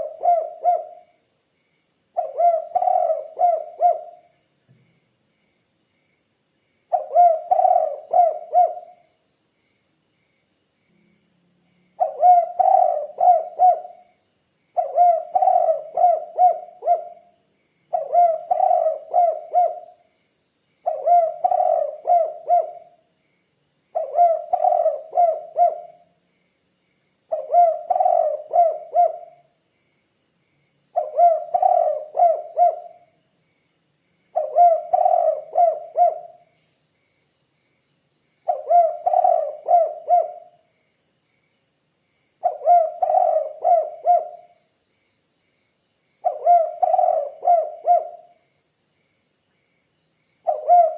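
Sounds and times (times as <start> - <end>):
dove cooing: 0.0 - 1.2, 2.2 - 4.3, 6.9 - 9.1, 12.0 - 14.1, 14.8 - 20.1, 20.8 - 23.0, 23.9 - 26.1, 27.3 - 29.5, 31.0 - 33.2, 34.3 - 36.5, 38.5 - 40.6, 42.4 - 44.6, 46.2 - 48.4, 50.5 - 50.9.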